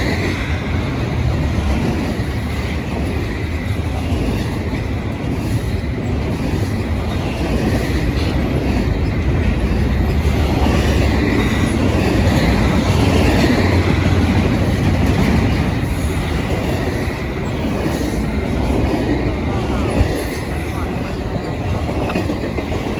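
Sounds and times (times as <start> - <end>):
train wheels rumbling on rail: 0.0 - 22.9.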